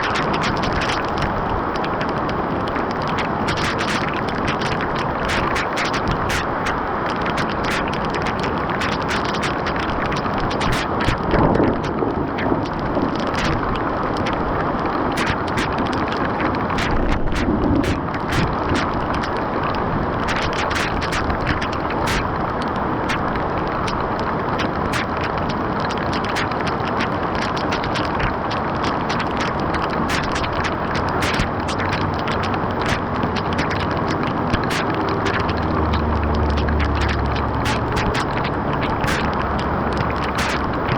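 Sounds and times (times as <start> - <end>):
water rushing through drain: 0.0 - 40.9
sharp ticks and taps: 29.1 - 40.9.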